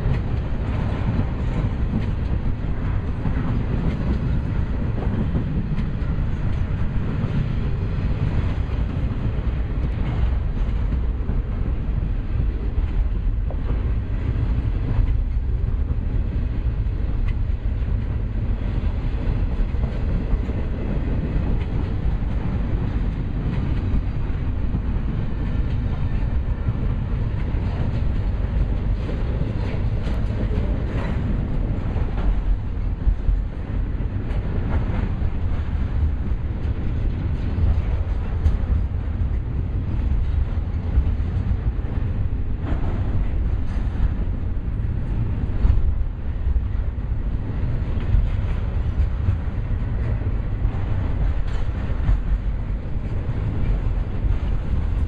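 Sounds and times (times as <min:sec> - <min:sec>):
train clicks: 0:00.0 - 0:55.0
train wheels rumbling on rail: 0:00.0 - 0:55.0.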